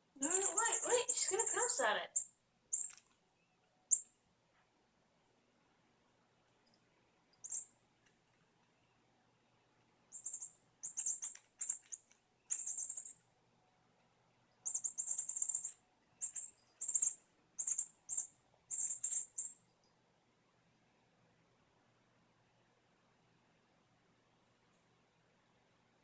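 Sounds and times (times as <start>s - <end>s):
squeaky toy chirping squeaks: 0.2s - 3.0s, 10.2s - 11.9s, 12.5s - 13.1s, 14.7s - 19.6s.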